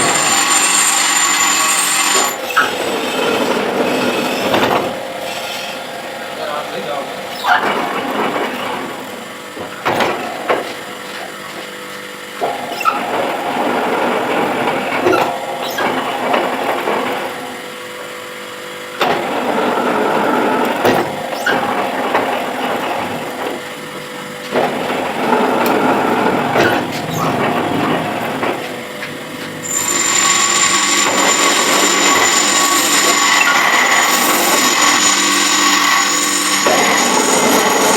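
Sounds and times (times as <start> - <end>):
lathe tool cutting metal: 0.0 - 9.5, 19.0 - 37.9
metal lathe running: 0.0 - 11.2, 12.2 - 37.9
high-pitched whine: 29.6 - 37.9.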